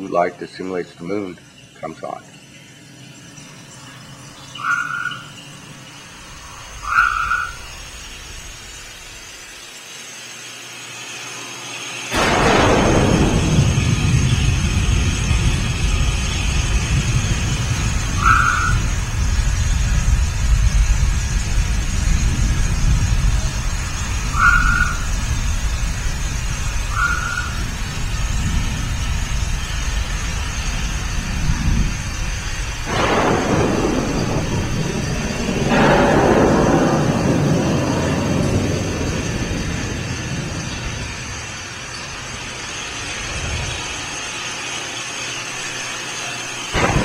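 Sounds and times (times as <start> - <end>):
rain hiss: 0.0 - 47.0
low thunder rumble: 12.1 - 44.1, 46.8 - 47.0.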